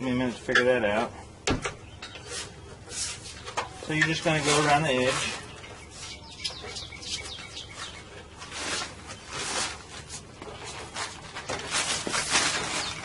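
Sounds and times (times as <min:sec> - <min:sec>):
small birds chirping: 0:00.0 - 0:10.0, 0:12.4 - 0:13.0.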